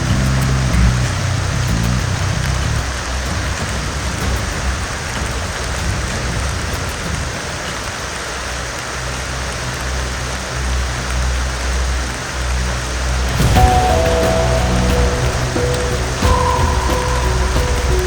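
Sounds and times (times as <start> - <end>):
heavy rain falling: 0.0 - 18.0
low hum: 13.1 - 18.0.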